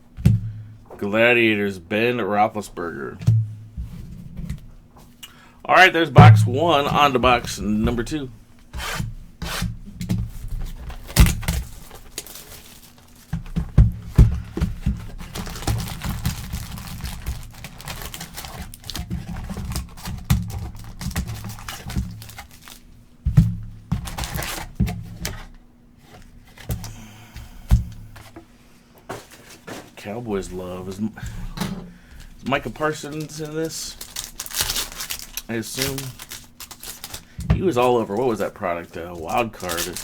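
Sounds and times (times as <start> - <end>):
plastic wrappers crinkling and tearing: 10.5 - 23.1, 23.9 - 25.5, 29.2 - 40.0
cardboard boxes thunking on table: 13.3 - 22.4.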